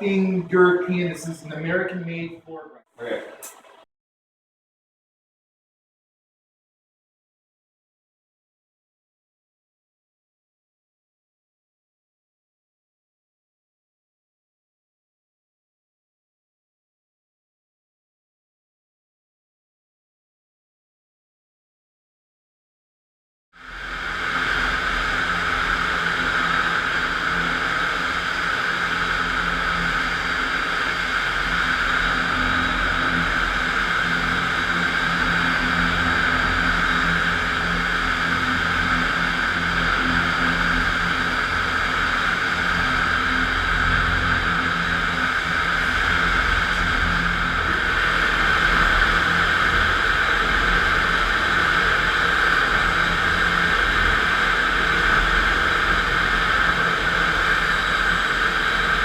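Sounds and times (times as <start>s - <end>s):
floor grinder running: 23.7s - 59.0s.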